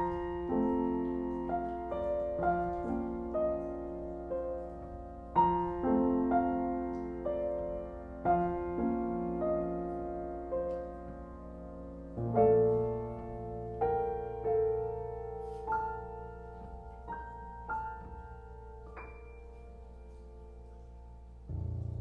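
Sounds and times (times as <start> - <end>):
solo piano playing: 0.0 - 22.0
low piano bass note: 21.2 - 22.0.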